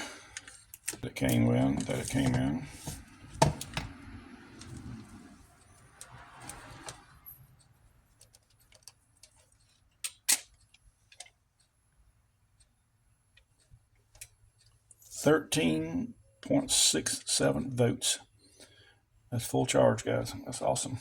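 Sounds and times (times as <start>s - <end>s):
handling rustling: 0.4s - 3.9s.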